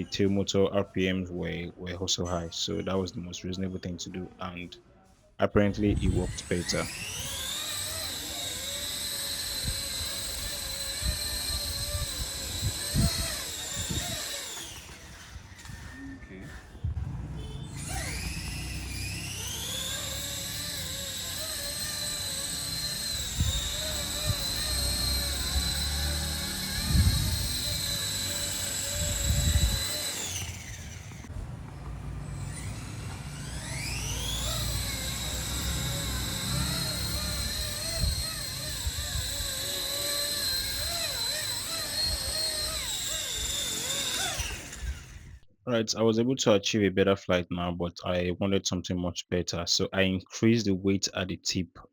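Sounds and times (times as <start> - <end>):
electric motors whining: 5.8 - 45.5.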